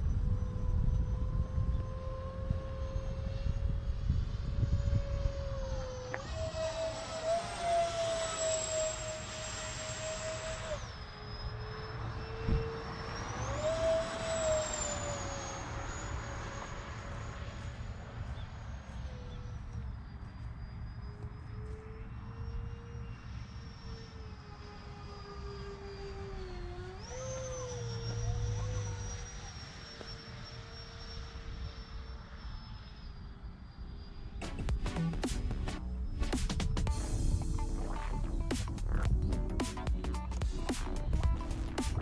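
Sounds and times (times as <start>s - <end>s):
wind rumble on microphone: 0.0s - 6.9s, 12.2s - 20.2s
electric ducted fans whining: 0.0s - 32.0s, 34.4s - 42.0s.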